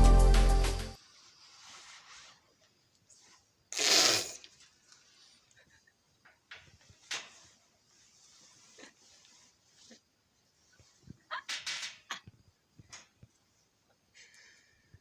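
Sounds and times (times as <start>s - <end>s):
faint rustling: 1.0s - 3.6s, 4.5s - 13.6s.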